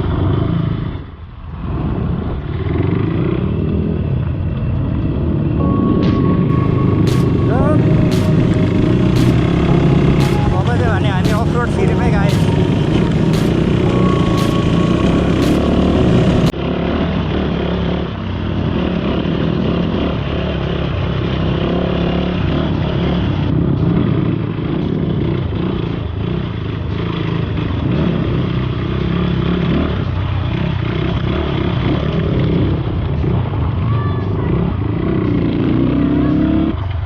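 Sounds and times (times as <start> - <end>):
motorcycle engine running: 6.6 - 16.5.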